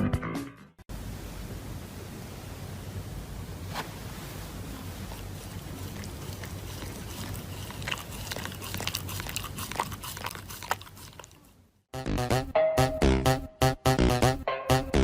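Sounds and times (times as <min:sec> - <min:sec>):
puppy chewing: 0:04.6 - 0:11.8
electronic music with a beat: 0:12.0 - 0:15.0.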